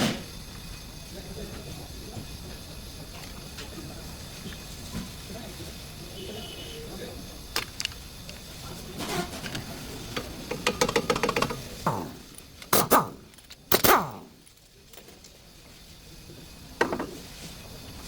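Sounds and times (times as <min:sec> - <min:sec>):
hand tools clicking on metal: 0:10.5 - 0:15.1.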